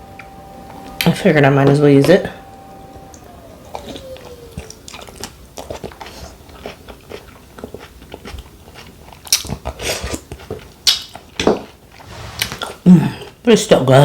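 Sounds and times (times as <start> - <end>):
person chewing food: 3.7 - 13.4.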